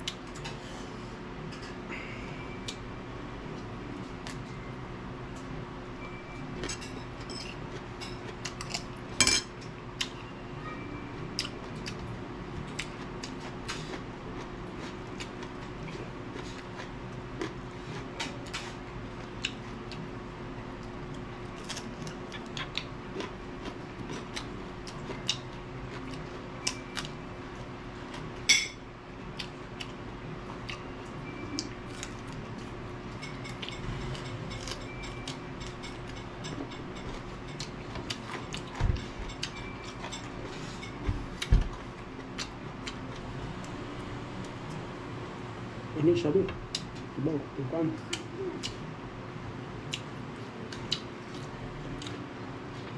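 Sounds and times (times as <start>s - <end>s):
steady low hum: 0.0s - 52.9s
utensils clinking on a plate: 6.6s - 9.7s, 33.1s - 41.1s.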